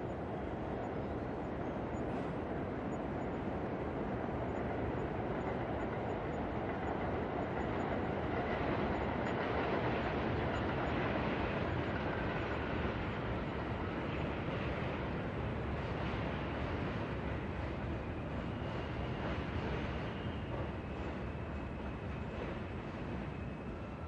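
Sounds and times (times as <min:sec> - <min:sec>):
subway train rumbling: 0:00.0 - 0:24.0
faint high squeal: 0:17.9 - 0:24.0.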